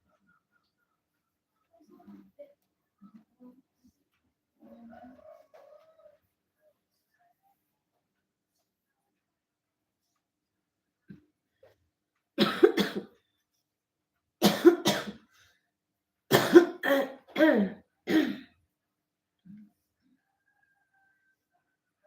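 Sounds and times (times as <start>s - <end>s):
person coughing: 12.4s - 13.1s, 14.4s - 15.2s, 16.3s - 18.5s.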